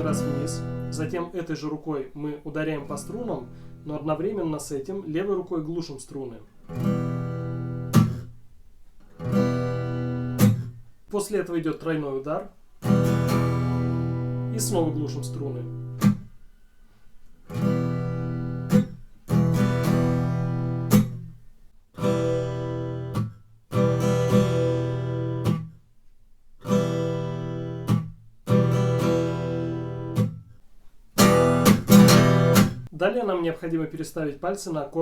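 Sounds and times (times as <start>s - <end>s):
acoustic guitar strumming: 0.0s - 1.2s, 2.7s - 3.8s, 6.6s - 8.4s, 9.0s - 10.9s, 12.8s - 16.4s, 17.4s - 21.4s, 22.0s - 25.8s, 26.6s - 30.5s, 31.1s - 32.9s.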